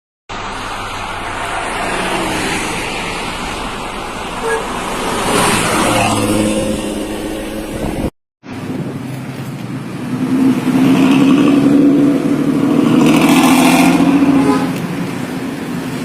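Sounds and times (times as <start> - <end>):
horn toot: 4.4 - 8.1, 13.8 - 14.8.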